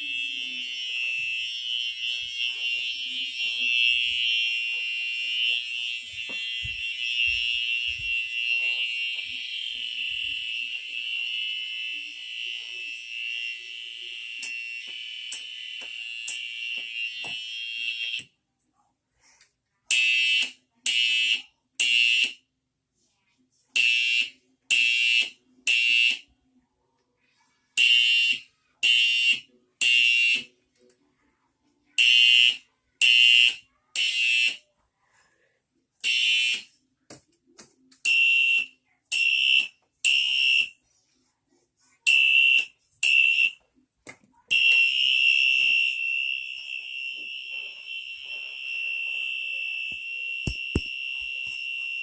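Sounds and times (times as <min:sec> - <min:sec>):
continuous alarm tone: 0:00.0 - 0:18.3, 0:23.8 - 0:26.3, 0:27.8 - 0:30.5, 0:32.0 - 0:34.6, 0:36.0 - 0:36.7, 0:38.0 - 0:40.8, 0:42.0 - 0:43.7, 0:44.5 - 0:52.0
fire alarm blasts: 0:00.0 - 0:18.3, 0:19.9 - 0:22.4, 0:23.8 - 0:26.2, 0:27.8 - 0:30.5, 0:32.0 - 0:34.6, 0:36.0 - 0:36.7, 0:38.0 - 0:40.8, 0:42.1 - 0:43.6, 0:44.5 - 0:52.0.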